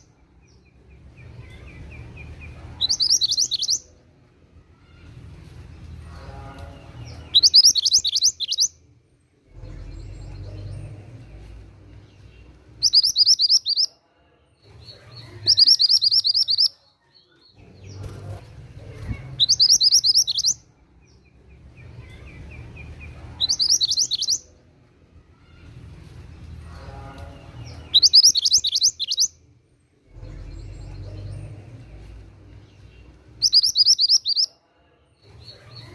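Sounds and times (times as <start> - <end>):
songbird trilling: 2.8 - 3.8, 7.3 - 8.7, 12.8 - 13.9, 15.4 - 16.7, 19.4 - 20.6, 23.4 - 24.4, 27.9 - 29.3, 33.4 - 34.5
faint low rumble: 8.8 - 13.1, 17.1 - 28.2, 29.4 - 33.6.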